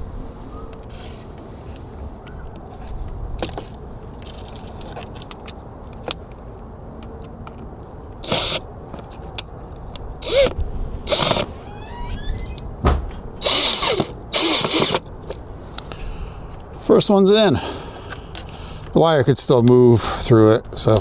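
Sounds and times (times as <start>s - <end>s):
cordless drill driving screw: 8.2s - 8.6s, 10.2s - 11.5s, 13.4s - 15.0s.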